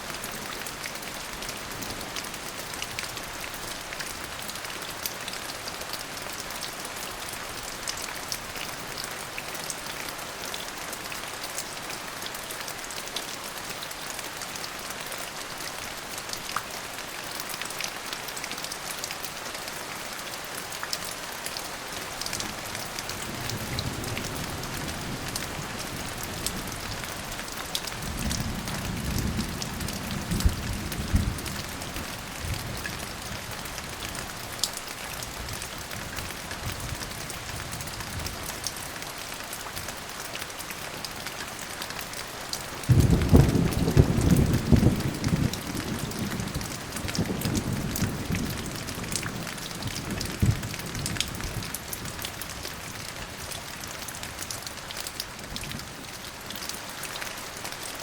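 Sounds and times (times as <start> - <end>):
steady rain falling: 0.0 - 58.0
raindrops tapping on a surface: 20.8 - 57.9
thunder rumbling: 42.9 - 49.4.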